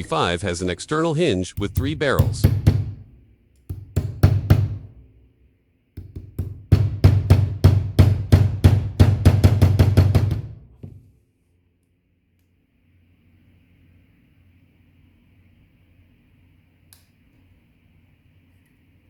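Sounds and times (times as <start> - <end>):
hammer tapping metal punch: 1.6 - 5.1, 6.0 - 11.0.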